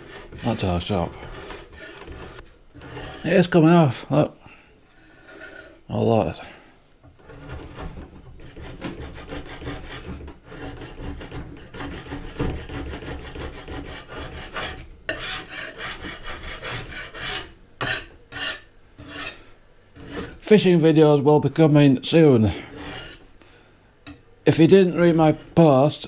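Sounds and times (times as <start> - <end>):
metal scraper rasping on wood: 0.0 - 4.0, 5.0 - 5.8, 7.2 - 20.6, 22.5 - 23.3, 24.6 - 25.8.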